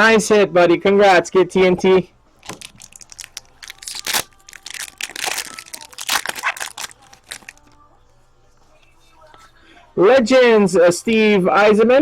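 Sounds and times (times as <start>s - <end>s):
plastic packaging crinkling: 2.4s - 7.8s.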